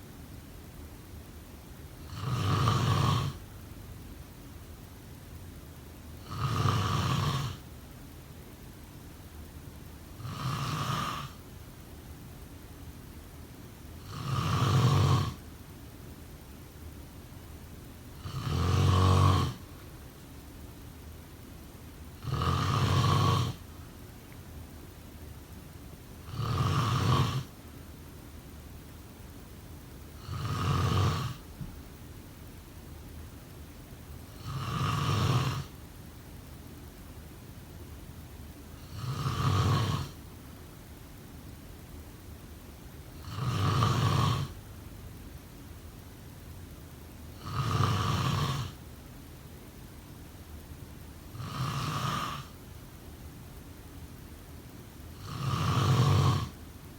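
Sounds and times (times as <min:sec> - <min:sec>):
faint steady hiss: 0:00.0 - 0:56.9
snoring: 0:02.0 - 0:03.4, 0:06.2 - 0:07.7, 0:10.2 - 0:11.4, 0:14.0 - 0:15.4, 0:18.2 - 0:19.8, 0:22.2 - 0:23.7, 0:26.2 - 0:27.5, 0:30.2 - 0:31.6, 0:34.3 - 0:35.8, 0:38.8 - 0:40.2, 0:43.2 - 0:44.6, 0:47.3 - 0:48.8, 0:51.3 - 0:52.6, 0:55.1 - 0:56.6.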